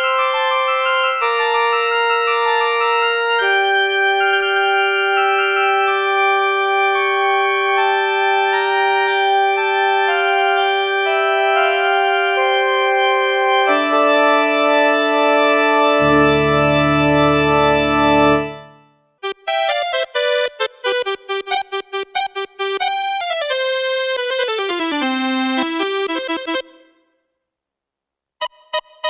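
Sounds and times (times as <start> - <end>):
synthesizer organ chords: 0.0 - 27.0
deep synth bass note: 16.0 - 18.7.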